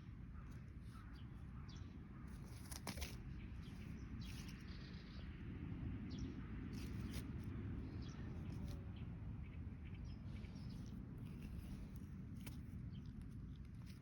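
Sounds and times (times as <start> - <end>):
small birds chirping: 0.0 - 14.0
steady low rumble: 0.0 - 14.0.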